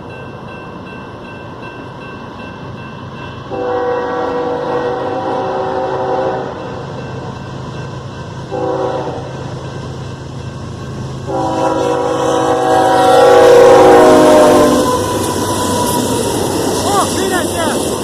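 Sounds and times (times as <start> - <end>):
locomotive rumble: 0.0 - 18.0
locomotive air horn blasts: 3.5 - 6.6, 8.5 - 9.3, 11.3 - 16.0.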